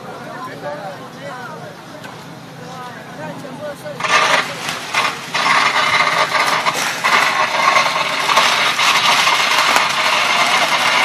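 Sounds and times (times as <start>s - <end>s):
firecrackers popping: 4.0s - 11.0s.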